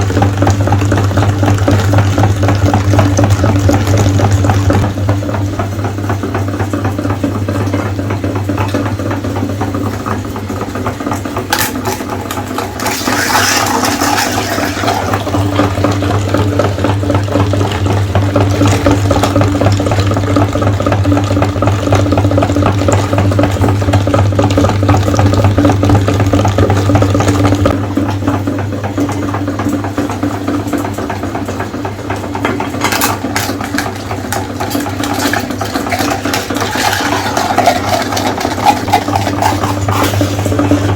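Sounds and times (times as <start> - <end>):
meat grinder motor humming: 0.0 - 40.9
wet rattling grinding: 11.2 - 16.2, 32.5 - 40.9.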